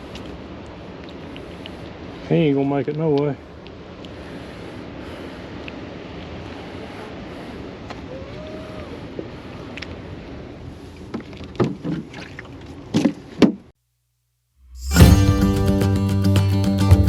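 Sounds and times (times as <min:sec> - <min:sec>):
spillway water rushing: 0:00.0 - 0:11.3
wind: 0:00.0 - 0:13.8.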